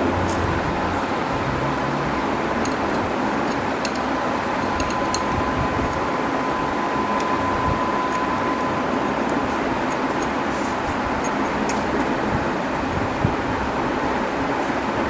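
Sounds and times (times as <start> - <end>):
fan running: 0.0 - 15.0
thin high whine: 0.0 - 15.0.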